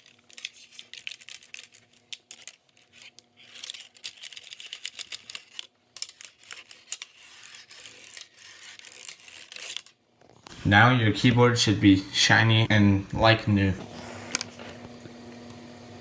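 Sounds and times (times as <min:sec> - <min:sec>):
cloth rubbing over keyboard: 0:13.7 - 0:14.8.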